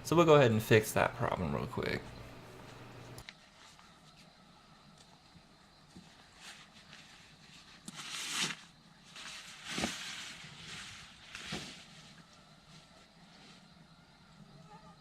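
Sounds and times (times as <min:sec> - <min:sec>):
camping gear rustling: 0:02.6 - 0:14.0.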